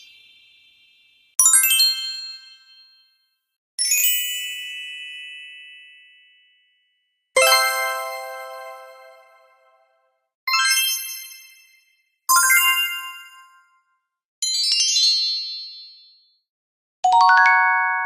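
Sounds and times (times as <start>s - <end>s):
sparkle sound effect: 7.4s - 9.6s.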